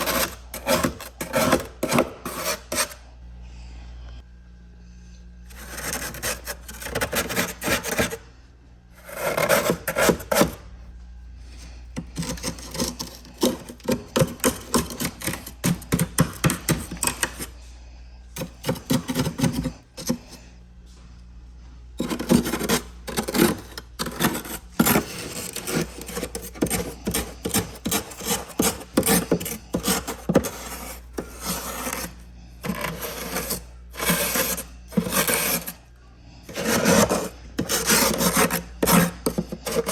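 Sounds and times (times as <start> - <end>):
frost being scraped: 0.0 - 3.0, 5.5 - 8.2, 9.0 - 10.6, 12.1 - 17.5, 22.0 - 35.8, 36.4 - 39.9
steady low hum: 0.0 - 39.9.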